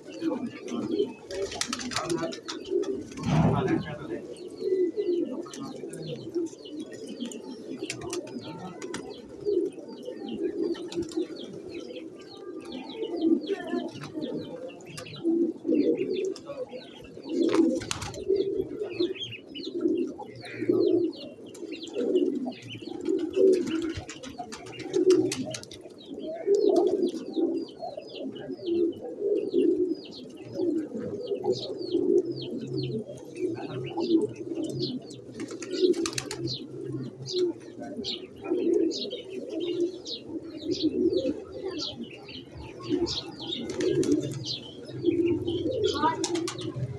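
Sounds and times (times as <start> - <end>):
low pulsing bird calls: 1.4 - 5.3.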